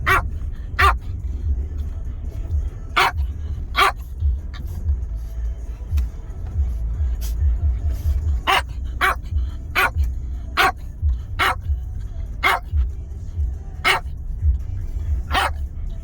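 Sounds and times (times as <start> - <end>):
dog barking: 0.0 - 1.2, 2.7 - 4.8, 8.0 - 13.0, 13.8 - 14.2, 15.1 - 15.7.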